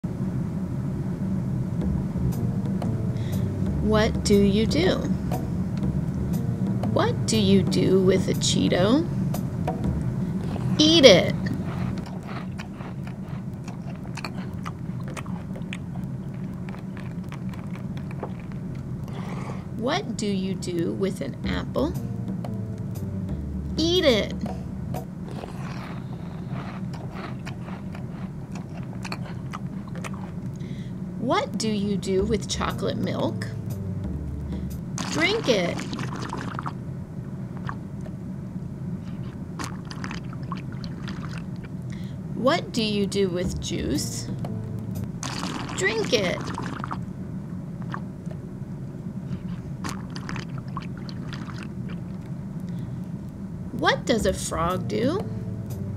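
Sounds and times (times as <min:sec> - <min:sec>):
steady low hum: 0:00.0 - 0:55.9
gulping and liquid sounds: 0:10.2 - 0:19.8, 0:25.2 - 0:30.8, 0:35.0 - 0:36.8, 0:37.6 - 0:38.2, 0:39.0 - 0:42.0, 0:45.2 - 0:47.1, 0:49.3 - 0:52.4
crunchy snack being chewed: 0:10.4 - 0:19.7, 0:25.3 - 0:30.7, 0:35.0 - 0:36.8, 0:39.0 - 0:41.8, 0:45.2 - 0:47.0, 0:49.4 - 0:52.8.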